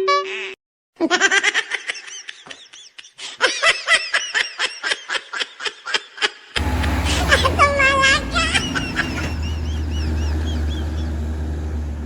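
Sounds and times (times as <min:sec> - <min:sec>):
laughter: 0:01.0 - 0:06.6.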